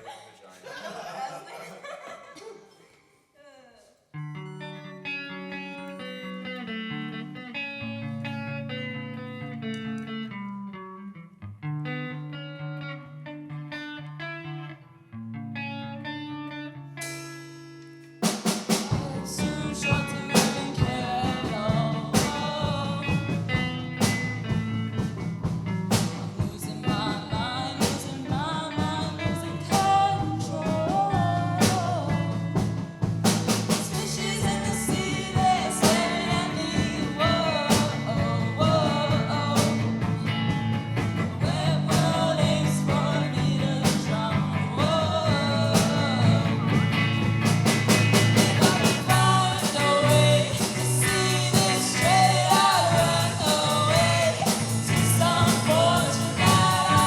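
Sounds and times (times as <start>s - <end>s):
picked guitar: 4.1s - 57.0s
drums and full band: 17.0s - 17.6s, 18.2s - 57.0s
lead vocal singing: 18.7s - 24.6s, 26.1s - 47.2s, 48.0s - 57.0s.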